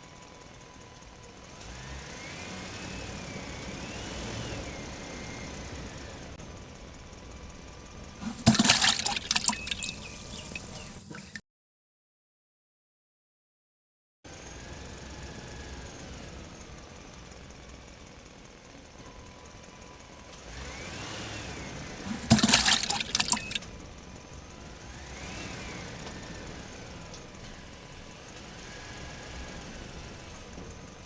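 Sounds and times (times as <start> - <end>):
toy electric motors whining: 20.4 - 23.9.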